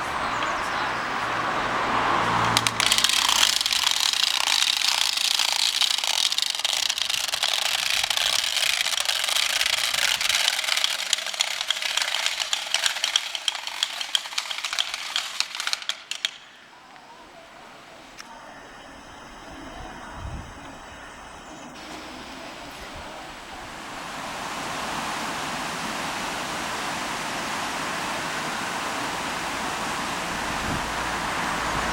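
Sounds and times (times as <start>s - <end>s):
wooden rattles clacking: 2.0s - 16.7s.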